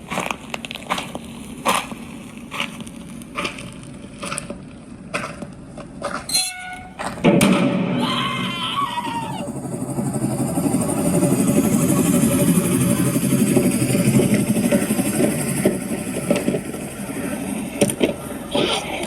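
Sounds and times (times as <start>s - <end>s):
loud rumble with sliding tones: 0.0s - 19.0s
sharp knocks: 6.0s - 8.0s.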